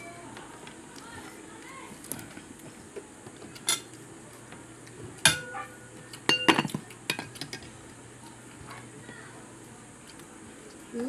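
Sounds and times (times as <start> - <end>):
cutlery clinking on a plate: 3.6 - 4.0, 5.2 - 7.7.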